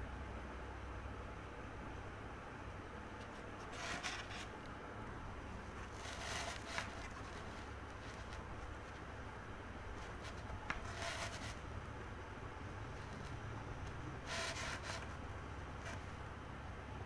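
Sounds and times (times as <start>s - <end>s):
faint low hum: 0.0s - 17.0s
short scraping: 5.8s - 8.5s, 10.0s - 11.7s, 14.2s - 15.2s.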